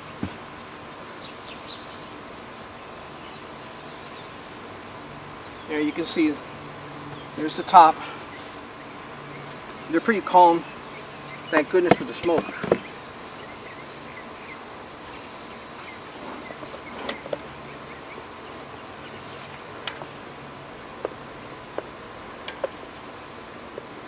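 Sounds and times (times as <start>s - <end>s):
bees buzzing: 4.3s - 22.4s.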